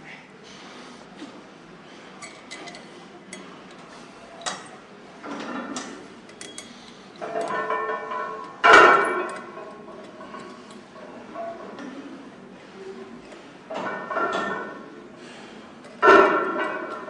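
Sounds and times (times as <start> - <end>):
gym equipment clinking: 4.4 - 12.0.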